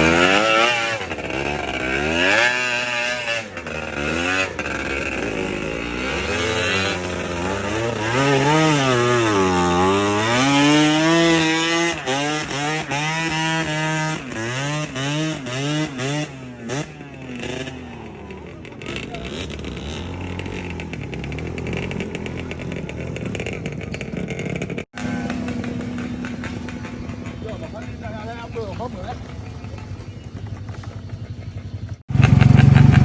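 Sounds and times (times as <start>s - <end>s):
dirt bike engine revving: 0.0s - 33.0s.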